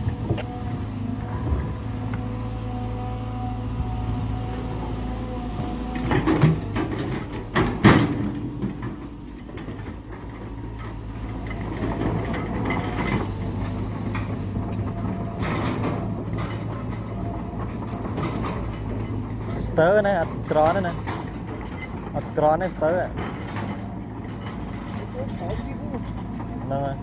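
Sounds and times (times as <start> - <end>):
diesel engine running: 0.0 - 27.0
loud metallic clanks: 6.0 - 14.9.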